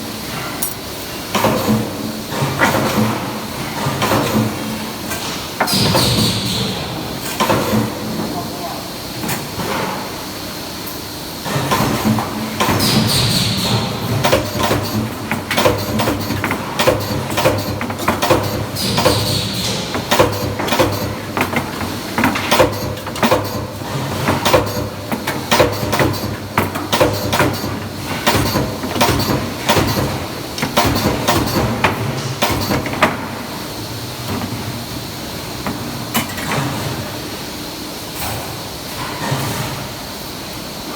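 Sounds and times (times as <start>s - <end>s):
welding machine clanks and clicks: 0.3s - 8.0s, 10.9s - 33.3s, 35.6s - 37.0s.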